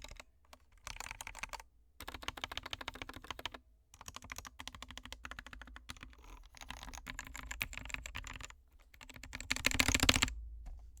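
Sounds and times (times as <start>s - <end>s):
keyboard typing: 4.1s - 11.0s.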